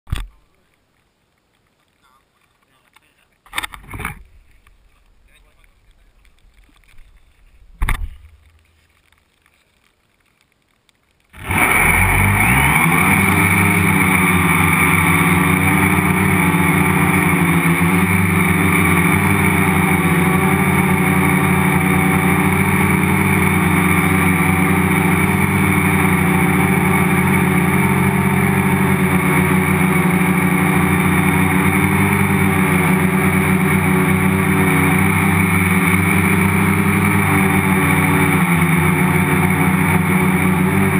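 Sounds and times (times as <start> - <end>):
drone motors and propellers whining: 11.4 - 40.9.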